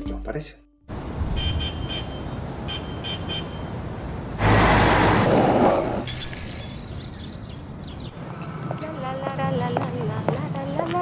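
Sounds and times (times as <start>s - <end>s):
vehicle passing close: 3.7s - 6.1s.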